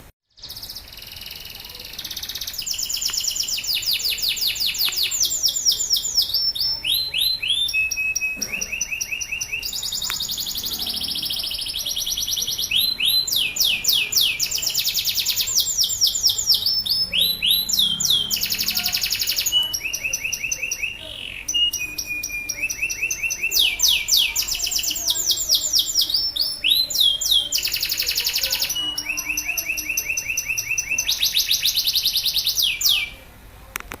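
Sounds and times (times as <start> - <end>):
canary singing trills: 0.2 - 33.3.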